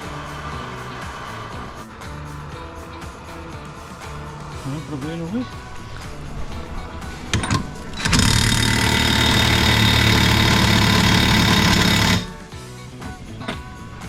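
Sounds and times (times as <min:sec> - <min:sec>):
background music: 0:00.0 - 0:14.0
impact wrench hammering: 0:07.3 - 0:12.4.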